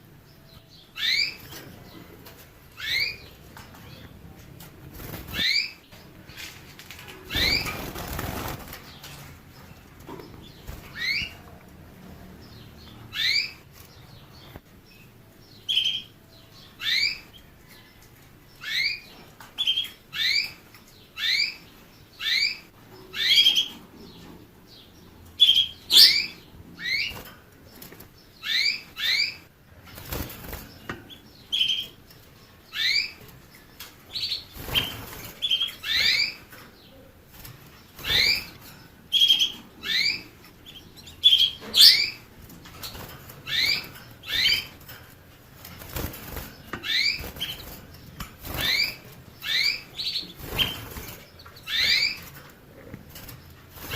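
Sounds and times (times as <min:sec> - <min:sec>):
canary chirping: 0:00.0 - 0:53.9
wings flapping: 0:06.4 - 0:09.0, 0:45.6 - 0:49.0.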